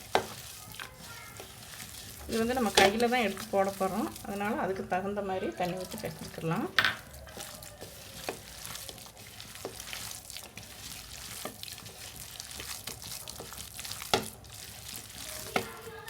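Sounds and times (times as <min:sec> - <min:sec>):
hands kneading wet batter: 0:00.0 - 0:16.0.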